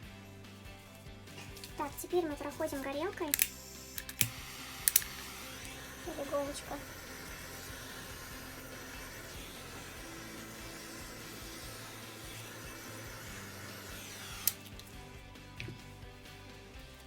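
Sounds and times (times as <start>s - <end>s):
gas torch hissing: 1.0s - 16.7s
torch switch click: 3.1s - 14.9s.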